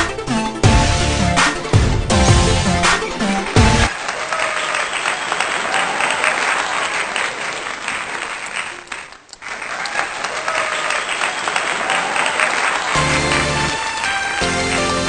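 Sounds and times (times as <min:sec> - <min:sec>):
crowd applauding: 0:03.8 - 0:15.0.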